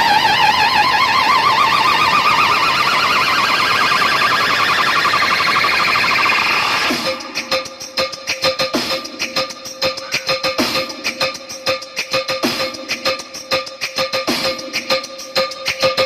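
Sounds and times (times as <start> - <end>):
warbling siren-like electronic tone: 0.0 - 7.8
choppy electronic beat: 0.0 - 16.0.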